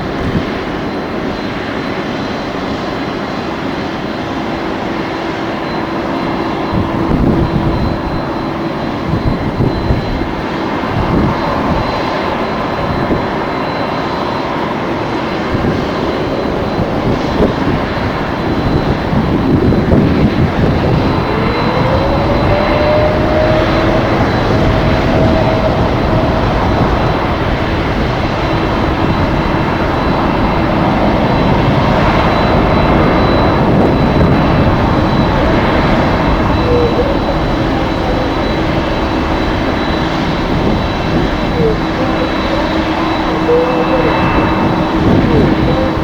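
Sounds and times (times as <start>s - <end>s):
jet engines whining: 0.0s - 46.0s.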